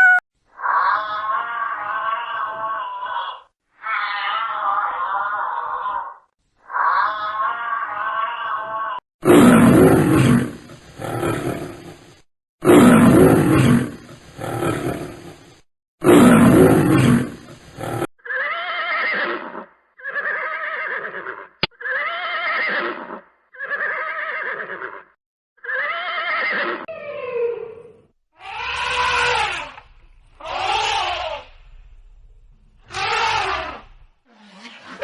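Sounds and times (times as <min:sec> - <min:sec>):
animal wavering calls: 0:00.0 - 0:06.1
animal roaring calls: 0:00.0 - 0:12.0, 0:12.6 - 0:15.4, 0:16.0 - 0:18.1, 0:32.8 - 0:35.0.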